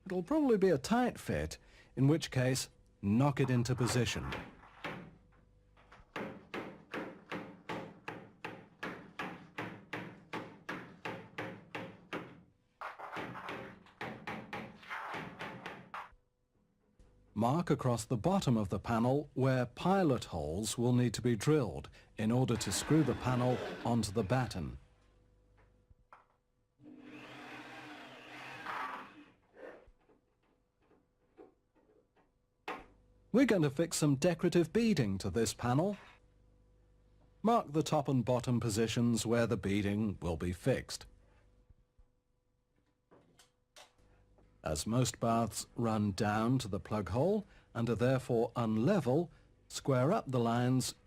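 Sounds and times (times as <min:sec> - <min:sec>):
knocks on wooden panel: 0:06.1 - 0:12.4
electric drill running: 0:26.8 - 0:29.2.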